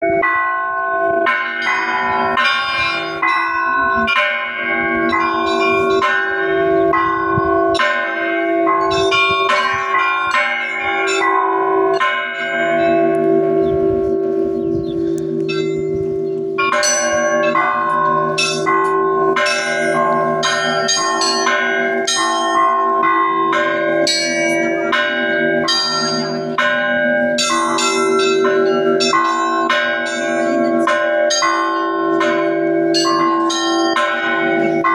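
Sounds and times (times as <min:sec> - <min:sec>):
deep bells humming: 0:00.0 - 0:34.9
small high church bells: 0:00.0 - 0:34.9.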